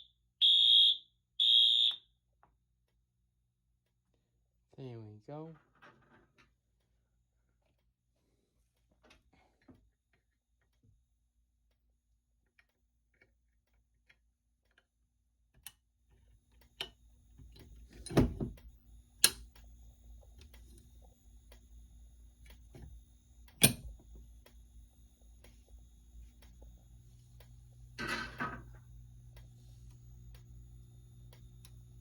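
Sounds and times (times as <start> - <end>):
thin steady whines: 16.5 - 32.0
faint steady hum: 16.6 - 32.0.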